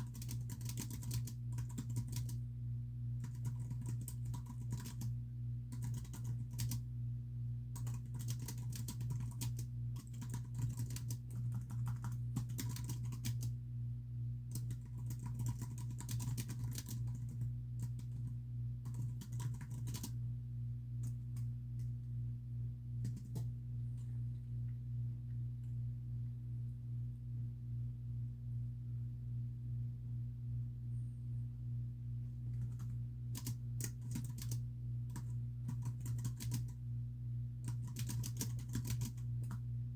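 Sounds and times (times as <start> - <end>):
computer keyboard typing: 0.0 - 2.4, 3.2 - 6.8, 7.8 - 13.6, 14.5 - 20.2, 21.0 - 21.9, 23.0 - 24.1, 32.5 - 36.8, 37.6 - 39.6
steady low hum: 0.0 - 39.9.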